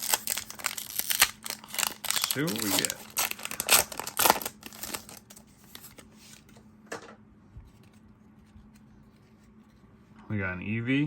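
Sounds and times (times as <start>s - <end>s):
foil wrapper crinkling: 0.0s - 6.0s
cards rustling: 0.0s - 6.6s.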